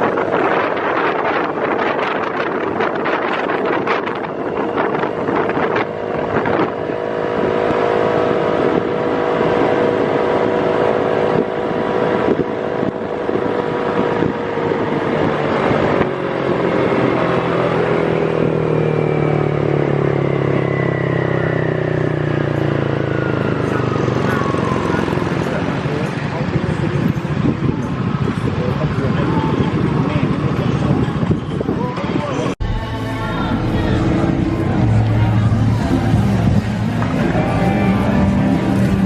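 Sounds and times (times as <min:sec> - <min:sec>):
traffic noise: 0:00.0 - 0:39.0
wind: 0:00.0 - 0:39.0
deep hum: 0:32.6 - 0:39.0
vehicle engine running: 0:32.6 - 0:39.0.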